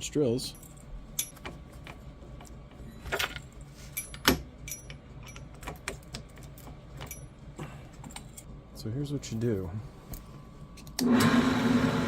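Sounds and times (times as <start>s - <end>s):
metallic clinks of tools handled: 0.5s - 1.5s, 3.2s - 5.6s, 6.4s - 7.4s.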